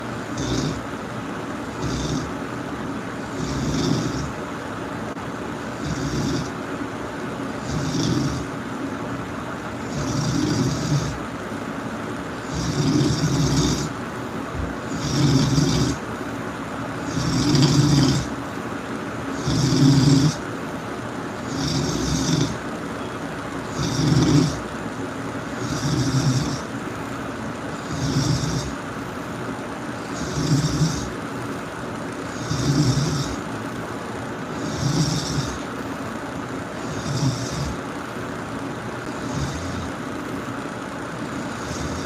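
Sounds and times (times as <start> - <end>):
person snoring loudly: 0.0 - 1.0, 1.6 - 2.5, 3.2 - 4.5, 5.6 - 6.6, 7.6 - 8.6, 9.8 - 11.3, 12.4 - 14.0, 14.6 - 16.1, 17.0 - 18.5, 19.3 - 20.5, 21.4 - 22.7, 23.6 - 24.8, 25.4 - 26.8, 27.7 - 29.0, 29.9 - 31.3, 32.2 - 35.8, 36.6 - 38.0, 39.0 - 40.2, 41.1 - 42.0.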